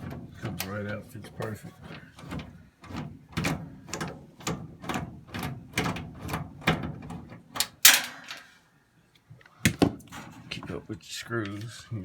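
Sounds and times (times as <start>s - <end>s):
sharp clack: 7.7s - 8.5s.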